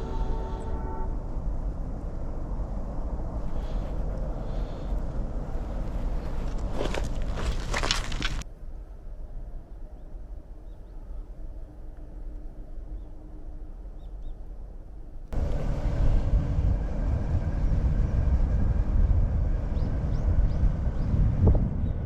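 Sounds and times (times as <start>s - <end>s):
wind buffeting microphone: 15.3s - 22.0s.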